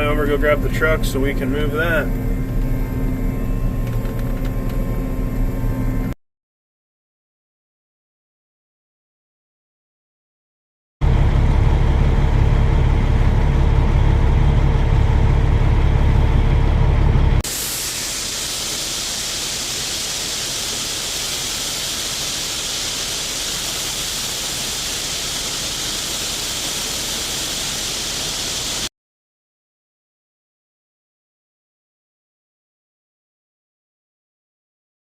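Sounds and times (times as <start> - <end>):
vehicle engine rumble: 0.0 - 6.2, 11.0 - 28.8
steady hiss: 17.5 - 28.9.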